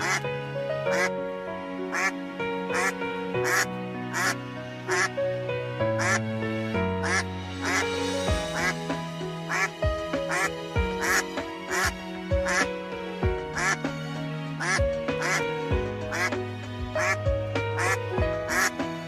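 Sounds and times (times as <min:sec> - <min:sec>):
music with held chords: 0:00.0 - 0:19.0
duck quacks: 0:01.9 - 0:02.1, 0:02.8 - 0:05.1, 0:06.0 - 0:06.2, 0:07.0 - 0:07.8, 0:09.5 - 0:09.7, 0:10.3 - 0:11.9, 0:13.6 - 0:13.8, 0:14.6 - 0:15.4, 0:17.8 - 0:18.7.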